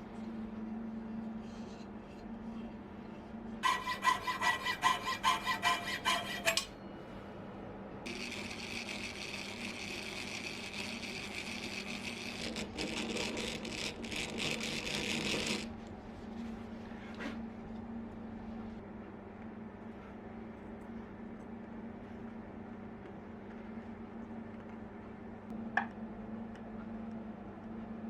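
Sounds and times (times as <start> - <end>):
file strokes with ringing edge: 3.6 - 6.7.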